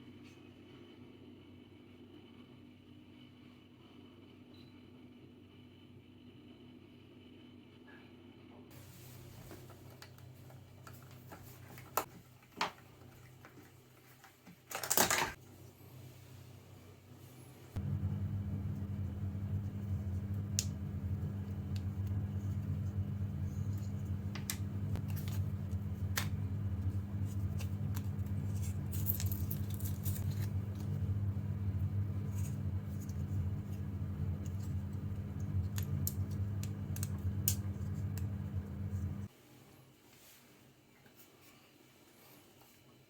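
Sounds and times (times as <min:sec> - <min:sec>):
steady low hum: 0:15.4 - 0:39.3.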